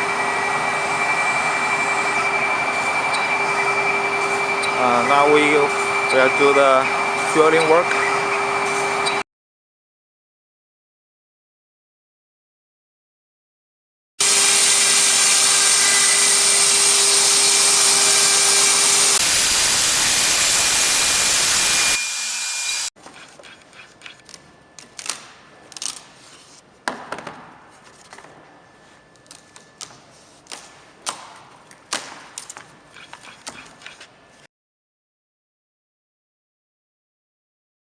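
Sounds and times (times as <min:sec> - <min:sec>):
router spindle whining and cutting: 0:14.2 - 0:23.0.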